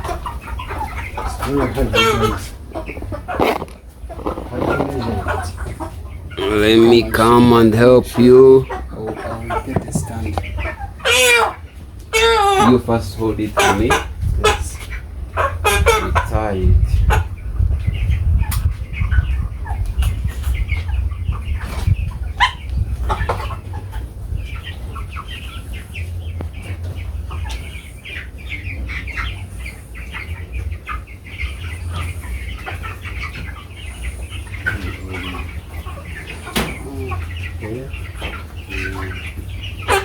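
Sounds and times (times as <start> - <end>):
chickens clucking: 0.0 - 40.0
steady low rumble: 16.4 - 28.6.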